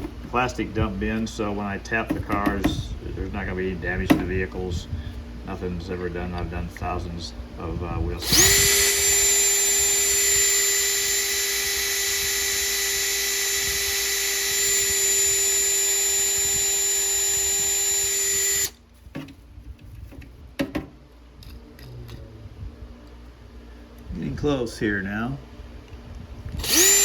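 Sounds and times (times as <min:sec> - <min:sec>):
electric drill whining: 0:08.2 - 0:18.8, 0:26.5 - 0:27.0.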